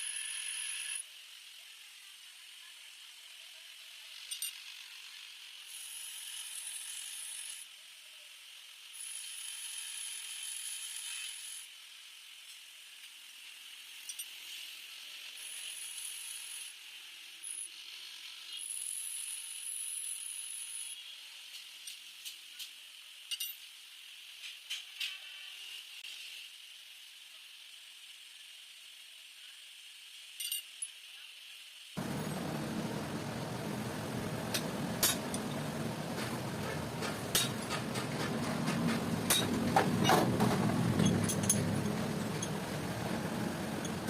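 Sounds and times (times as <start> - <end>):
high-pitched machine whine: 32.0 - 44.0
machine running: 32.0 - 44.0.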